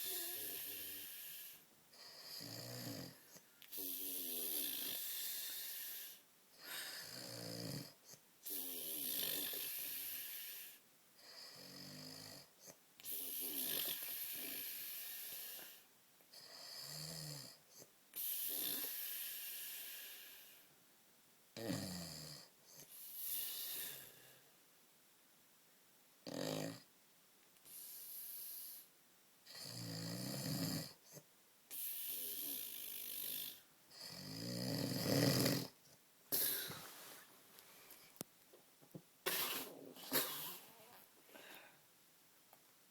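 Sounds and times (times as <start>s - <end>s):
man snoring: 0.0s - 3.2s, 3.8s - 6.2s, 6.8s - 12.5s, 13.2s - 15.7s, 21.6s - 22.5s, 26.2s - 26.8s, 29.5s - 31.0s, 32.0s - 36.8s.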